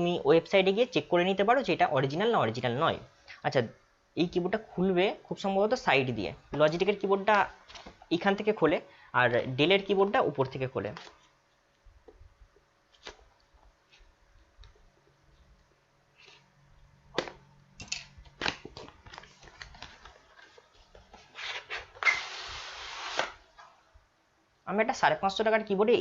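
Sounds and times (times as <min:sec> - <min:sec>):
cardboard sliding against cardboard: 0:21.2 - 0:23.4.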